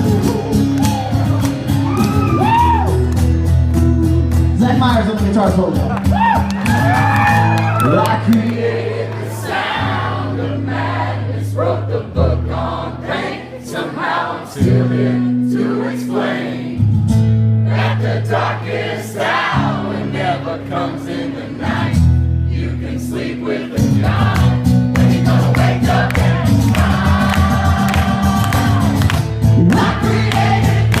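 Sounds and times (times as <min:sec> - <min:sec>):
strummed acoustic guitar: 0:14.5 - 0:22.5, 0:23.6 - 0:31.0.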